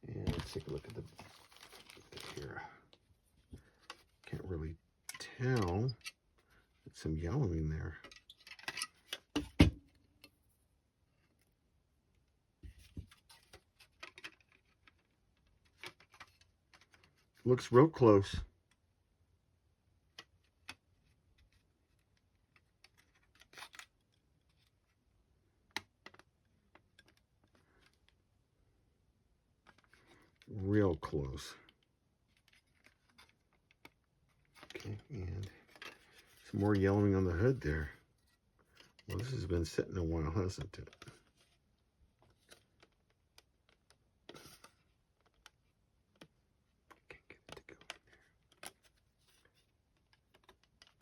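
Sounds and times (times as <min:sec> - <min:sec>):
plastic parts clicking and tapping: 0:12.8 - 0:17.2, 0:25.7 - 0:28.2, 0:42.2 - 0:51.0
plastic parts clicking: 0:50.0 - 0:51.0.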